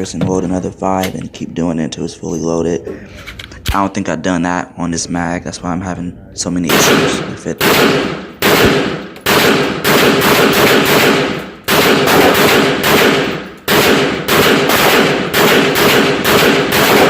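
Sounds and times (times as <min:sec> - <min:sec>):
pistol shots with echo: 0:06.7 - 0:17.0.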